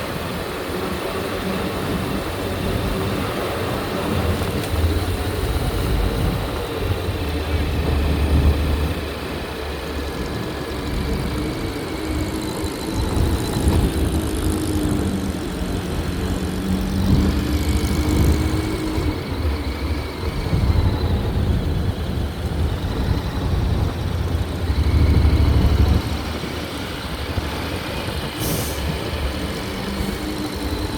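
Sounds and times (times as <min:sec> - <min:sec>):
vehicle engines rumbling: 0:00.0 - 0:30.9.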